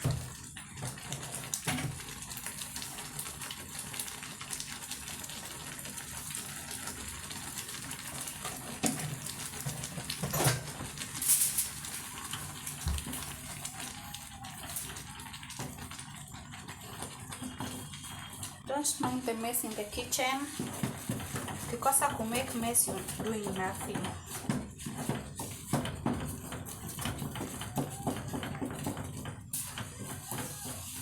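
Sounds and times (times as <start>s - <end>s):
wet churning hiss of stirring: 0.0s - 31.0s
wooden stick knocking pot: 20.5s - 31.0s.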